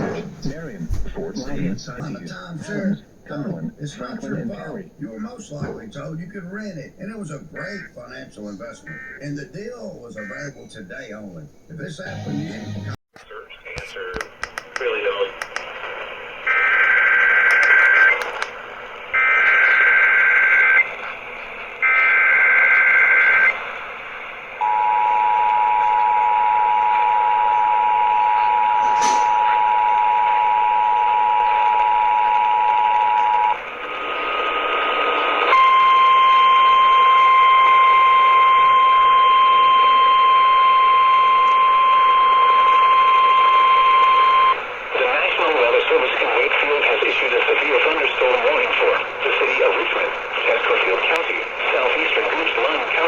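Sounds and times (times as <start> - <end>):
noise burst: 12.0 - 53.0
two-tone attention signal: 35.5 - 44.6.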